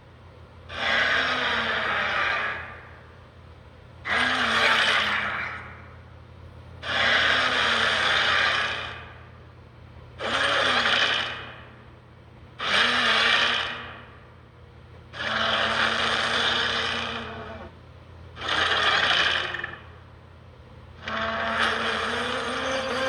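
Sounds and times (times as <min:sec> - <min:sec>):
whirring grinding mechanical effect: 0:04.1 - 0:05.6, 0:10.2 - 0:11.5, 0:12.6 - 0:14.0, 0:15.2 - 0:17.7, 0:18.4 - 0:19.9, 0:21.0 - 0:23.0.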